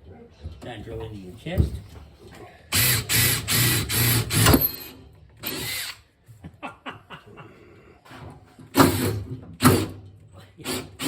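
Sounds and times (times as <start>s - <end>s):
power drill boring into metal: 2.8s - 6.0s.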